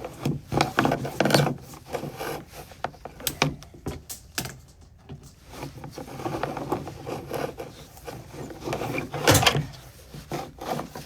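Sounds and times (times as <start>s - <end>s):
cable scraping inside a pipe: 0.1s - 3.1s, 5.4s - 11.0s.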